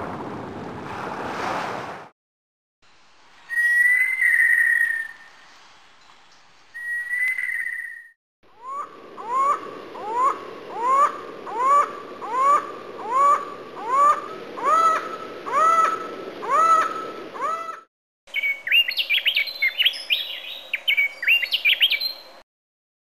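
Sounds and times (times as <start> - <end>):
bird-like whistled calls: 3.5 - 5.4, 6.7 - 22.3.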